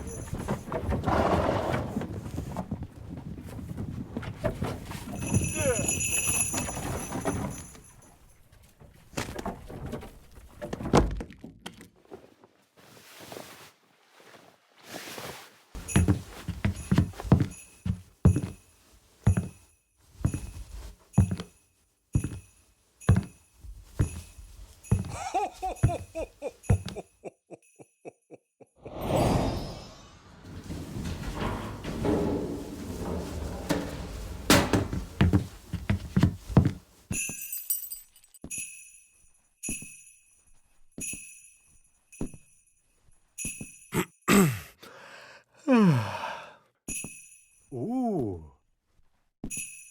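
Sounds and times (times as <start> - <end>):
sleigh bells jingling: 5.1 - 8.0, 22.2 - 28.3, 37.1 - 40.2
heavy thumping footsteps: 15.8 - 18.6, 23.1 - 25.2, 30.4 - 37.0.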